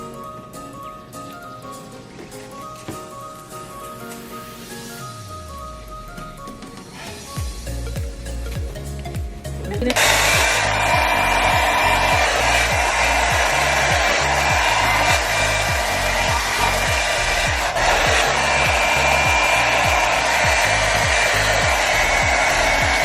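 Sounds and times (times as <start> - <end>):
background music with beat: 0.0 - 23.0
hair dryer running: 9.8 - 23.0.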